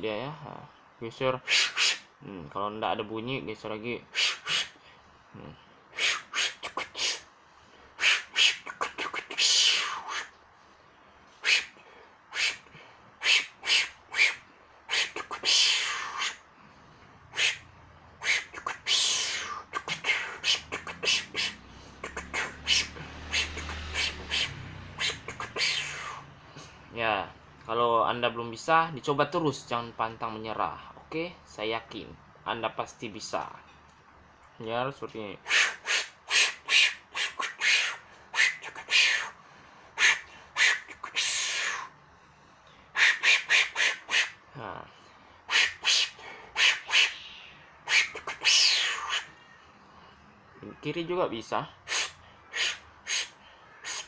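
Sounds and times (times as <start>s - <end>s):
beatboxing mouth clicks: 1.4s - 2.6s, 4.1s - 4.8s, 5.4s - 7.3s, 8.0s - 10.4s, 11.4s - 16.4s, 17.3s - 26.8s, 35.4s - 39.4s, 40.0s - 41.9s, 43.0s - 44.7s, 45.5s - 49.4s, 51.9s - 54.0s.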